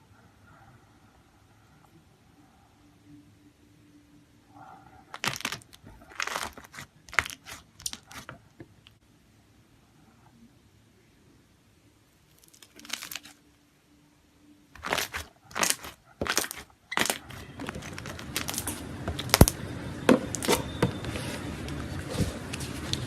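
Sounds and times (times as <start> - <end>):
slime clicking and popping: 14.8 - 19.6.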